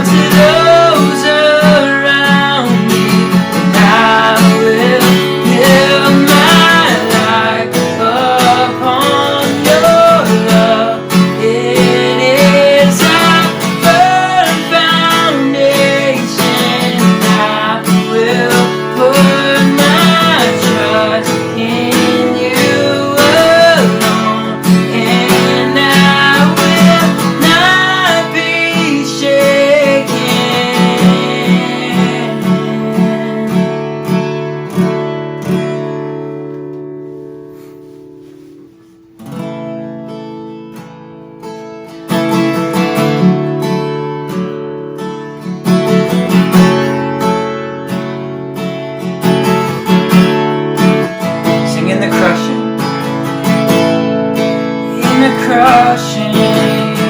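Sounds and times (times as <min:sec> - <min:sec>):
person singing: 0:00.0 - 0:34.0, 0:51.4 - 0:52.9, 0:54.8 - 0:57.0
acoustic guitar strumming: 0:00.0 - 0:57.0.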